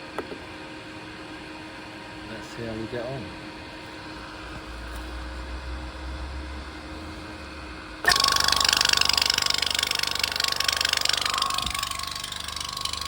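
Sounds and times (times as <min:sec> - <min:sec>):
air compressor pulsing chatter: 0:08.0 - 0:13.0.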